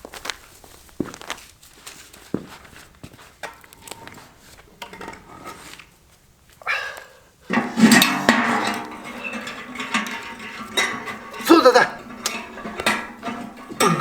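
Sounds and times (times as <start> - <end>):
light footsteps: 0.0 - 4.8.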